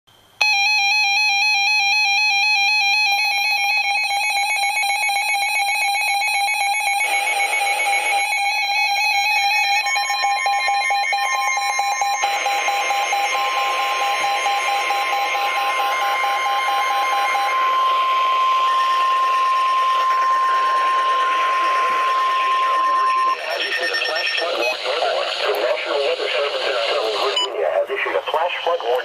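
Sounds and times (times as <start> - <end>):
warbling electronic alarm tone: 0.4 - 26.5
steady alarm tone: 0.4 - 27.6
radio hiss: 7.0 - 8.7, 12.2 - 29.0.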